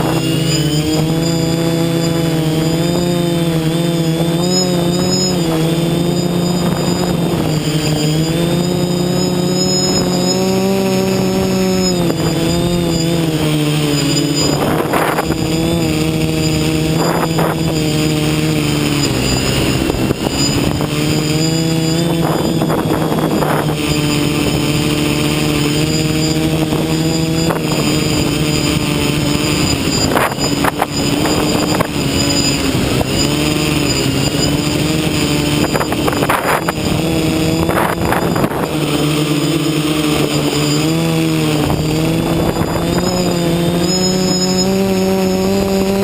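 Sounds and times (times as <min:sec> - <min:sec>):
drone motors humming: 0:00.0 - 0:46.0
wind gusts on microphone: 0:00.0 - 0:46.0.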